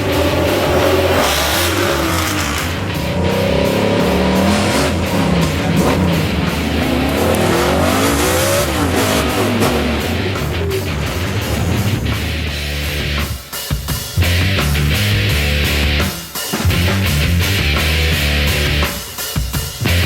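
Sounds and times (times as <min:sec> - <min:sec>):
car engine revving: 0:00.0 - 0:13.4
heavy rock guitar music: 0:00.0 - 0:20.0.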